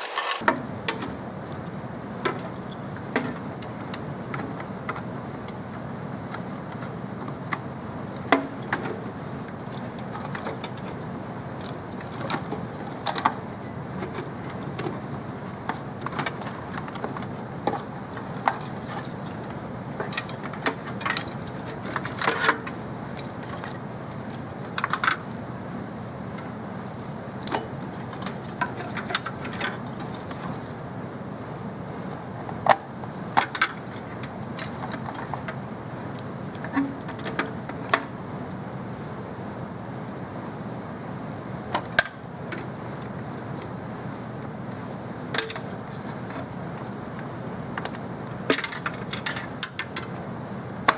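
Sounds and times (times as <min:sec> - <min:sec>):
steady low hum: 0:26.5 - 0:29.0.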